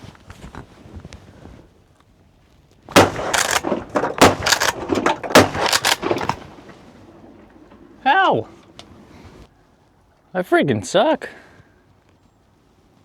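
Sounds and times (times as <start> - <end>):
shotgun pump racking: 2.9 - 7.9
shotgun shots: 2.9 - 8.8.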